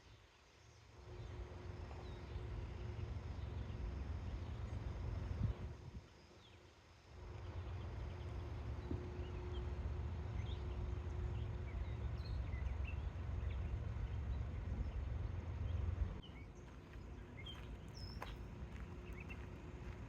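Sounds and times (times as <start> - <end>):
low steady rumble: 1.0 - 20.0
small birds chirping: 11.3 - 20.0.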